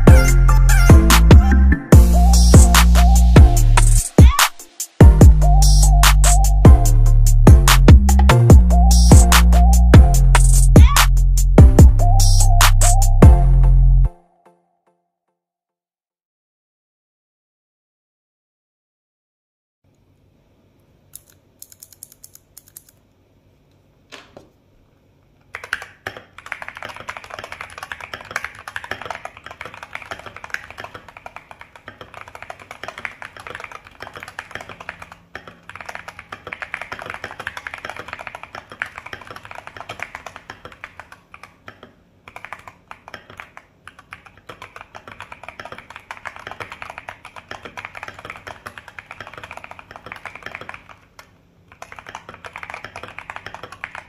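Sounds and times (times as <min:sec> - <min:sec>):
mechanical keyboard typing: 0:21.2 - 0:23.0, 0:25.5 - 0:54.0.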